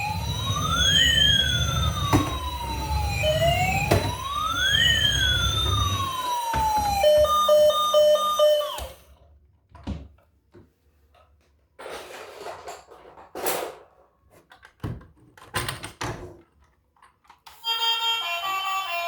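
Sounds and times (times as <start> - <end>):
toy siren pulsing beep: 0.0 - 9.1.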